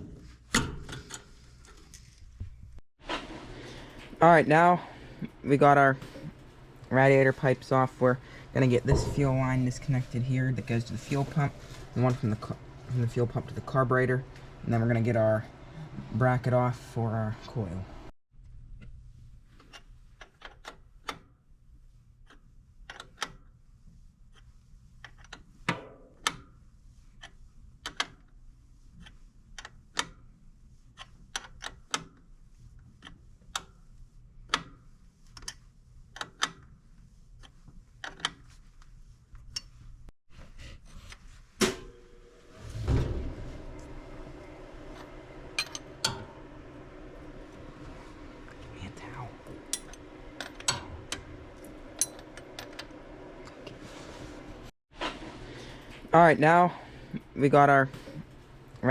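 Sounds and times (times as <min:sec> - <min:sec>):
short low rumble: 0:08.9 - 0:10.1, 0:42.4 - 0:45.6.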